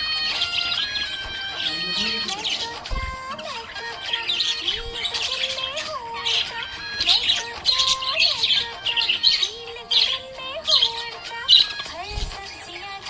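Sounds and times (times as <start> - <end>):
melodic tune: 0.0 - 7.3
budgerigar chirping: 0.0 - 12.9.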